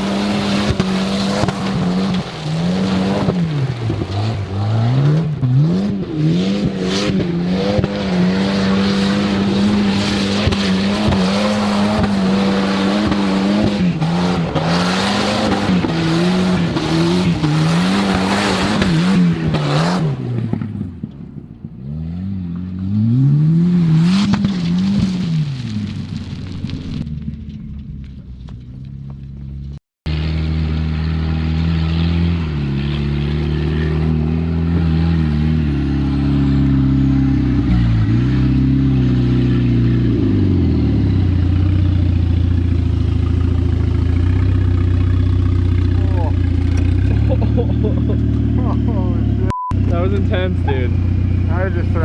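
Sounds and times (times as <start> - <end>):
tyres on gravel: 0.0 - 5.8, 8.2 - 21.1, 23.8 - 30.4, 39.6 - 52.0
rally car engine revving: 0.0 - 52.0.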